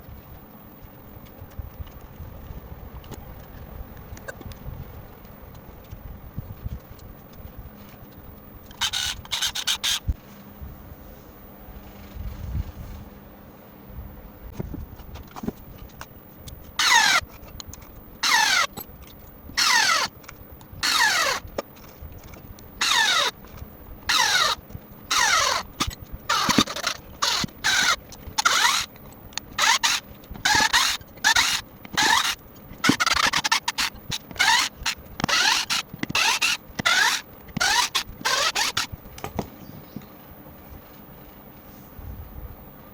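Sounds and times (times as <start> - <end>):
electric screwdriver whining: 8.7 - 10.1, 16.7 - 18.9, 19.5 - 21.6, 22.3 - 38.9.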